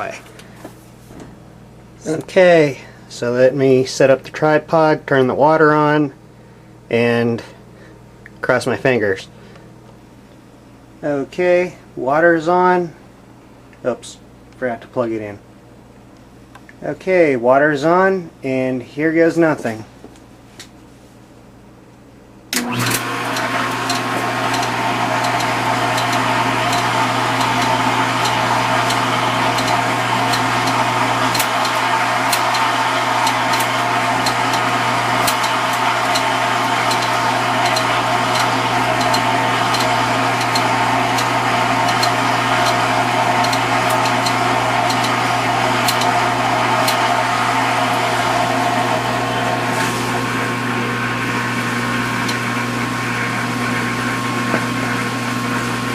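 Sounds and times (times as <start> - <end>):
dishwasher low hum: 0.0 - 6.7, 22.5 - 55.9
dishwasher rushing noise: 22.8 - 51.1
sharp clicks: 45.8 - 46.2.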